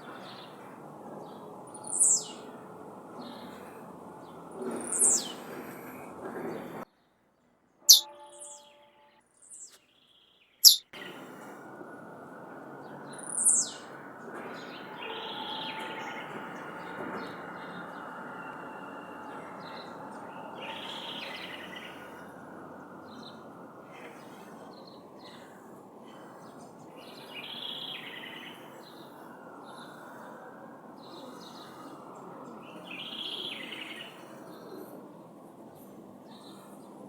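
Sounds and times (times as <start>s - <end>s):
bird buzzy notes: 7.9s - 8.1s.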